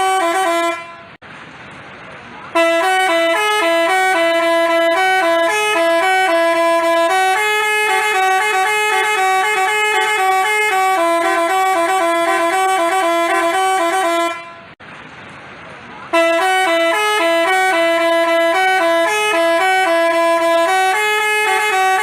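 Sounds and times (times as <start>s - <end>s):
multi-tone horn melody: 0.0s - 1.2s, 2.5s - 14.8s, 16.1s - 22.0s.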